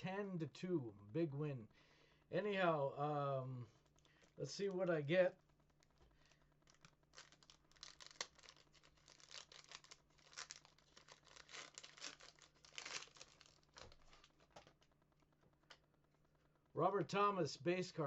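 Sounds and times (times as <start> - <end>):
wrapper crinkling and tearing: 6.2 - 14.8.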